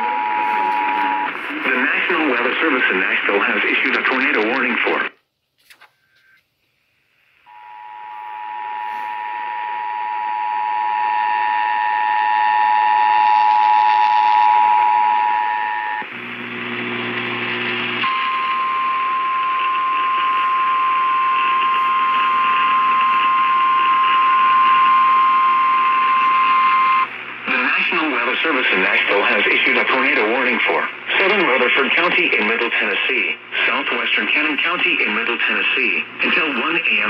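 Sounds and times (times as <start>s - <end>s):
steady warning alarm tone: 0.0s - 2.3s, 7.5s - 16.1s, 18.0s - 27.1s
low buzz: 14.4s - 27.4s.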